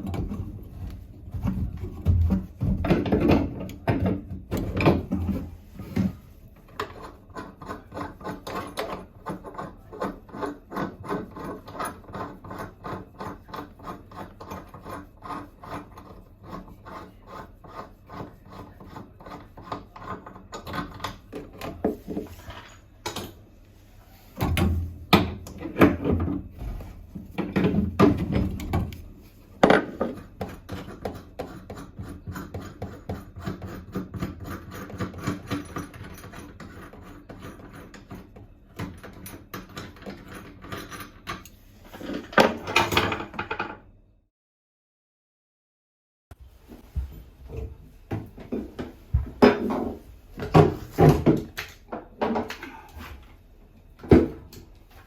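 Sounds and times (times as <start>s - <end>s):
hand tool rasping strokes: 6.9s - 20.4s.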